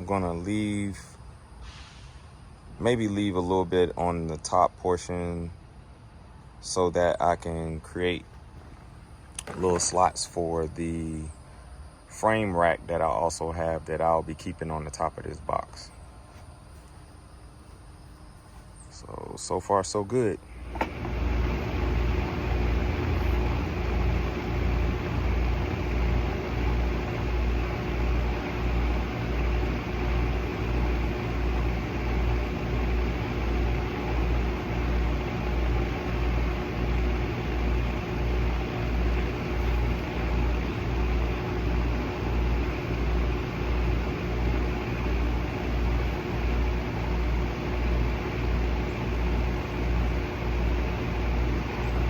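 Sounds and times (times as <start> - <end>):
power tool motor running: 20.5 - 52.0.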